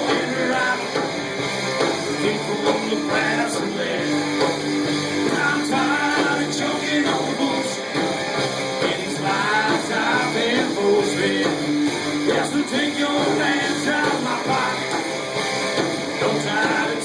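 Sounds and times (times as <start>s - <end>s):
person singing: 0.0s - 1.3s, 2.0s - 4.5s, 5.2s - 8.1s, 8.8s - 11.6s, 12.2s - 15.1s, 16.2s - 17.0s
guitar: 0.0s - 17.0s
rock and roll band playing: 0.0s - 17.0s.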